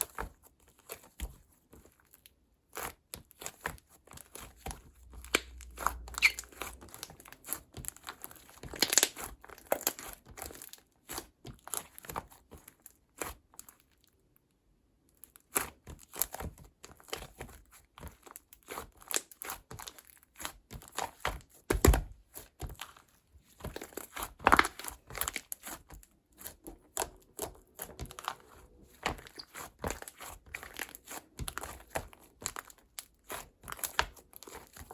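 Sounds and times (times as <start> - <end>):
slime crackling and popping: 5.2 - 12.1.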